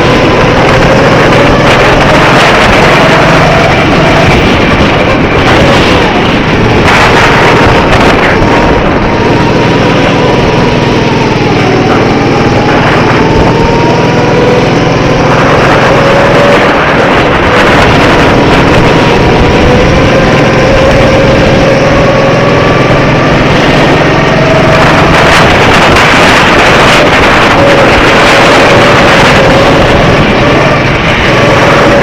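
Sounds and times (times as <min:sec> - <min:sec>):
go-kart engines: 0:00.0 - 0:32.0
steady rush of noise: 0:00.0 - 0:32.0.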